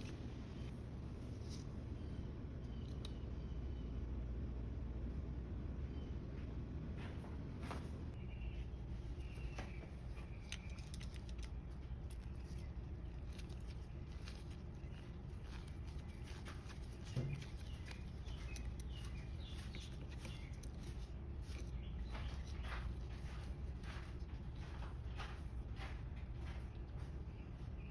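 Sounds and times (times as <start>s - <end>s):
low steady hum: 0.0s - 27.9s
small parts clicking: 10.2s - 21.7s.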